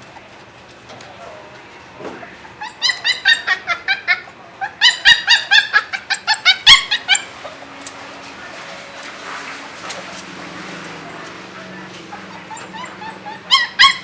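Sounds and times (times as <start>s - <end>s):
puppy yelping: 2.2s - 8.2s, 9.2s - 14.0s.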